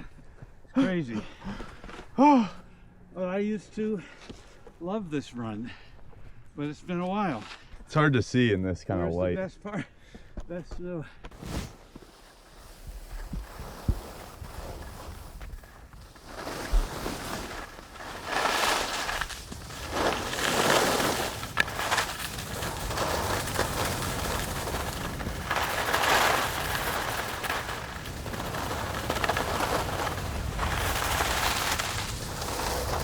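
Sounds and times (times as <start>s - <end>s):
skis scraping across snow: 11.3s - 33.0s
low wind rumble: 12.4s - 33.0s.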